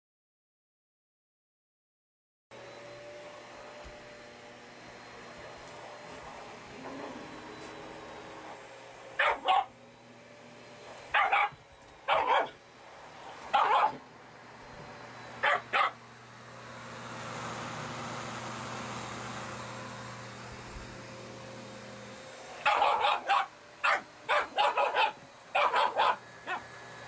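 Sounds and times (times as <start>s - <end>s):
dog barking: 9.2s - 9.8s, 11.1s - 12.6s, 13.5s - 14.0s, 15.4s - 16.0s, 22.6s - 26.7s.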